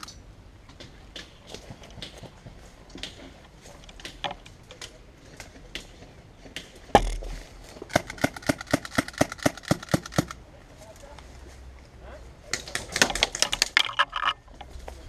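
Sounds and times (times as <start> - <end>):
even run of clicks: 0.0 - 10.4, 12.5 - 15.0.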